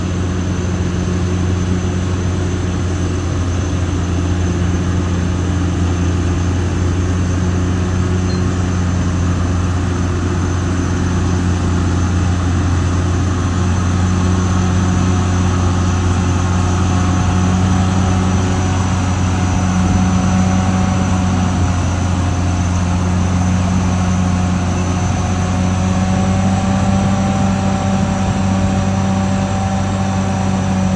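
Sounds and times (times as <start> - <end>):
bulldozer diesel engine droning: 0.0 - 30.9
faint higher tones: 8.2 - 8.6.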